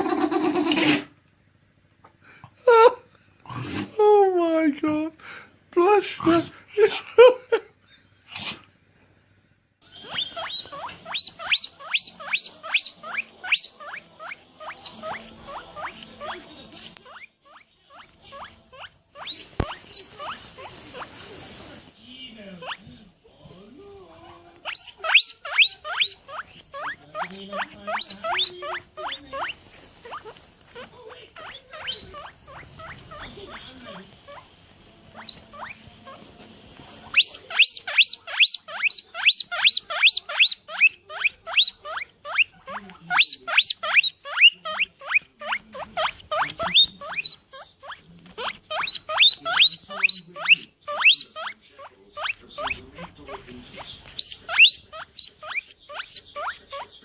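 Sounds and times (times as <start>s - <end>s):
small animal squeaking: 9.9s - 21.2s, 22.6s - 23.0s, 24.6s - 34.5s, 35.1s - 36.3s, 37.0s - 57.0s.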